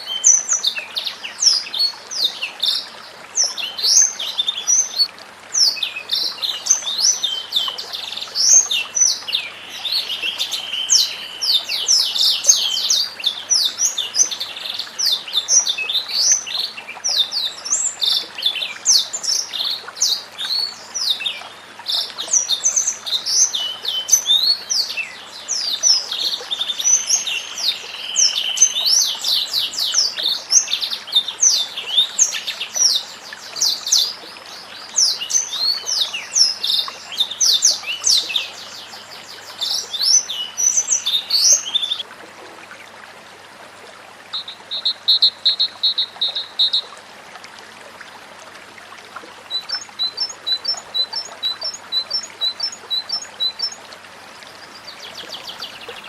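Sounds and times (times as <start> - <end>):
bird singing chirps and whistles: 44.3 - 46.9.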